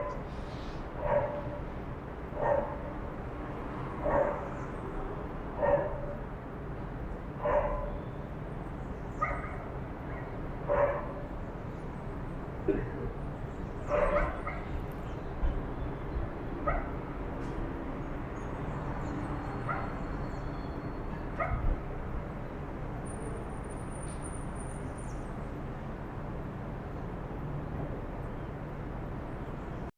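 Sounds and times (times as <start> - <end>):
steady background noise: 0.0 - 29.9
dogs barking: 1.0 - 1.6, 2.4 - 2.9, 4.0 - 4.6, 5.6 - 6.2, 7.4 - 8.0, 9.2 - 11.2, 13.8 - 14.8, 16.6 - 17.0, 19.6 - 20.0, 21.3 - 21.7.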